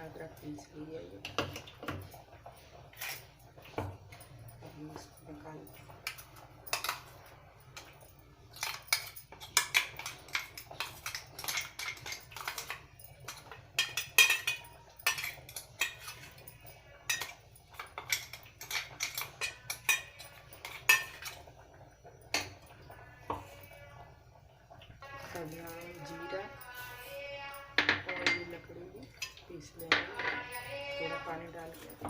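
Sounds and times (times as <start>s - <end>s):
spoon scraping a grinder jar: 2.9s - 3.4s, 8.5s - 21.4s, 29.8s - 32.0s.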